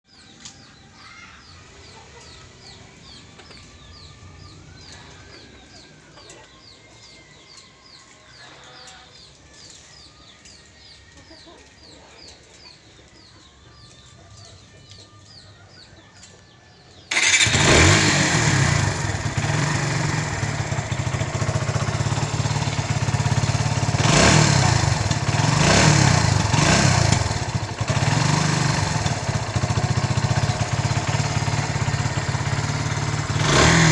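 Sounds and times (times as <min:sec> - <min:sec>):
motorcycle engine running: 0:17.1 - 0:33.9.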